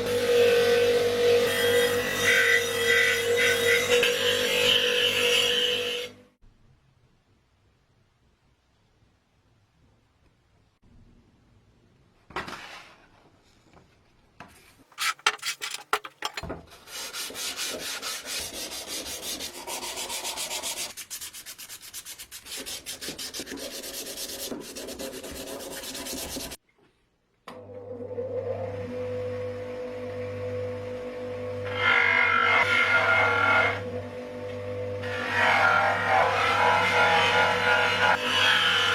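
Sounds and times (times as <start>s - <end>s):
hand sanding strokes: 16.8s - 26.6s.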